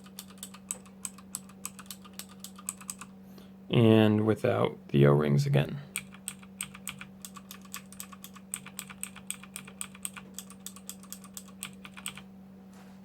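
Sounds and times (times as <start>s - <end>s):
mechanical keyboard clicking: 0.0s - 3.1s, 5.9s - 12.2s
steady low hum: 0.0s - 13.0s.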